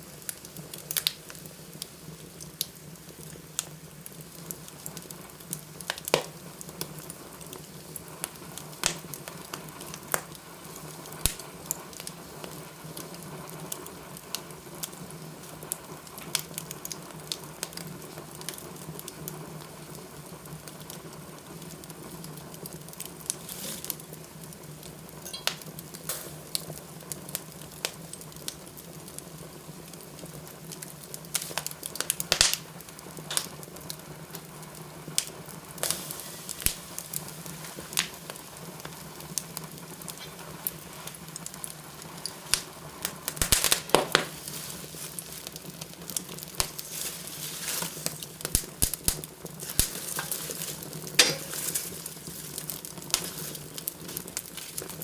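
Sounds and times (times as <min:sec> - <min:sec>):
fire pops and snaps: 0:00.0 - 0:55.0
wood fire crackling: 0:00.0 - 0:55.0.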